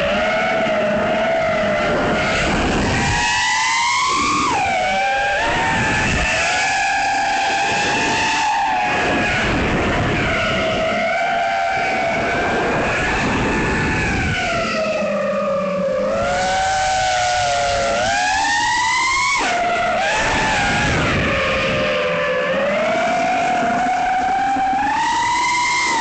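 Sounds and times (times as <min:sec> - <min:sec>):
drone motors whining: 0:00.0 - 0:26.0
wind noise: 0:00.0 - 0:26.0.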